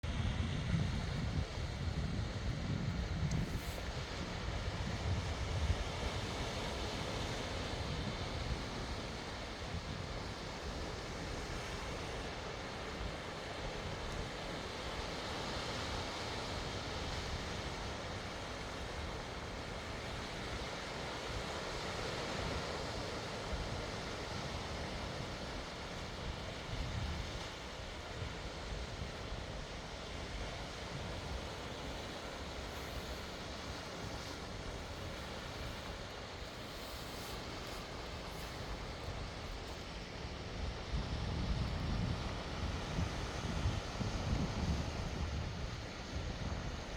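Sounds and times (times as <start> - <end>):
wind gusting on microphone: 0.0 - 10.2, 30.6 - 46.9
sea surf washing on shore: 0.1 - 46.9.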